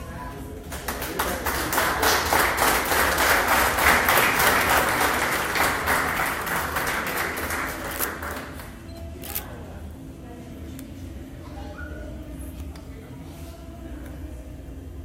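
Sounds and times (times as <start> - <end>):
crowd applauding: 0.7 - 8.8.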